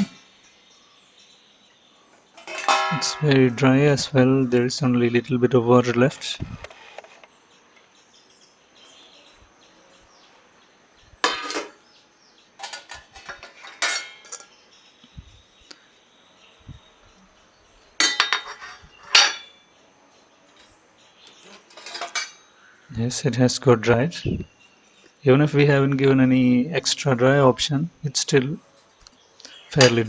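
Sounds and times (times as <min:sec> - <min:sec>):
dishes and cutlery clinking: 0:02.4 - 0:05.2, 0:11.2 - 0:12.0, 0:12.6 - 0:14.6, 0:18.0 - 0:19.7, 0:20.6 - 0:22.6, 0:29.7 - 0:30.0.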